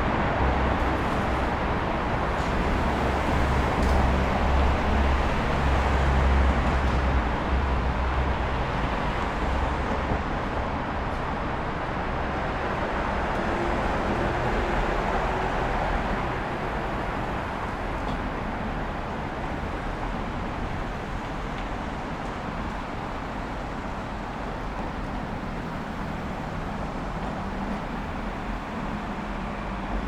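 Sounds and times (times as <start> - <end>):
passing cars: 0.0 - 30.0.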